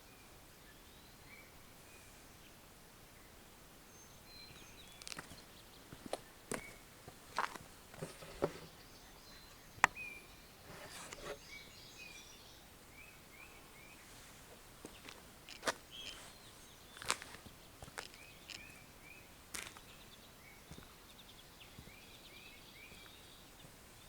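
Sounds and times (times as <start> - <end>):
rustling: 7.4 - 8.8, 10.6 - 11.5
faint bird chirps: 14.9 - 24.0.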